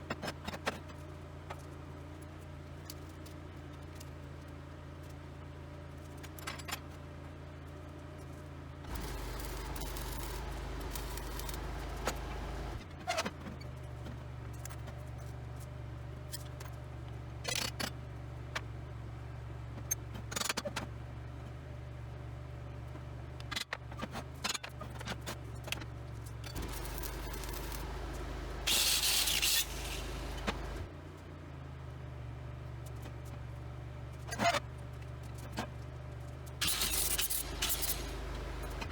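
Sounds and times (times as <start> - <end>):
low electrical hum: 7.1 - 12.8, 26.0 - 38.9
metal clinks and scrapes: 26.4 - 30.9
loud hiss: 26.6 - 30.9.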